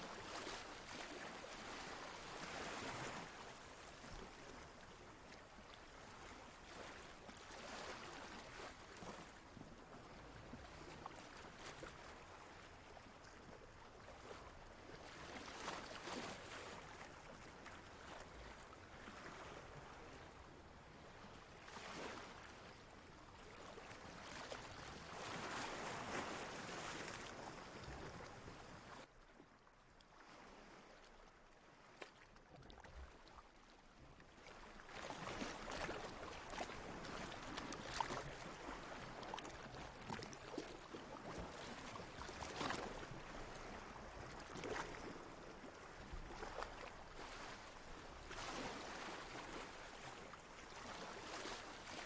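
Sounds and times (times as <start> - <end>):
ocean water washing and sloshing: 0.0 - 52.0.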